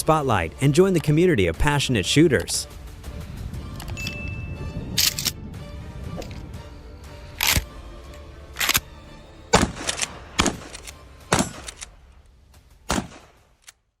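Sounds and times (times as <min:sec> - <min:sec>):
background music: 0:00.0 - 0:13.9
sharp bangs: 0:09.5 - 0:12.0, 0:12.8 - 0:13.4.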